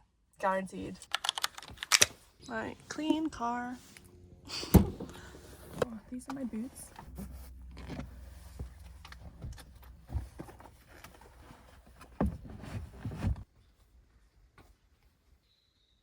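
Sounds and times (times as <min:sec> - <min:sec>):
low hum: 0:02.4 - 0:11.9
rustling: 0:05.2 - 0:15.2
dull knocks and thumps: 0:07.0 - 0:13.4.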